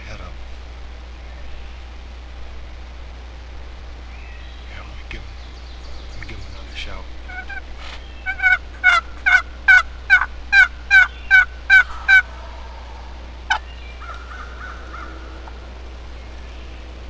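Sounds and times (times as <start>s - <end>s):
turkey call yelps: 4.0s - 17.0s.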